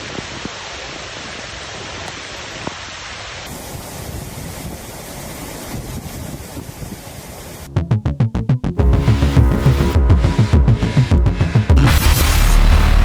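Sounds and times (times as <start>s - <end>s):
storm wind and water rushing: 0.0s - 7.7s.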